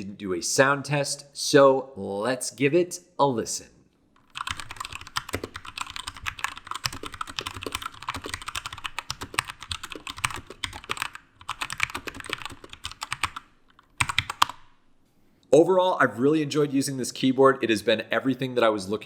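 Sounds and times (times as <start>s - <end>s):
mechanical keyboard typing: 4.2s - 14.8s.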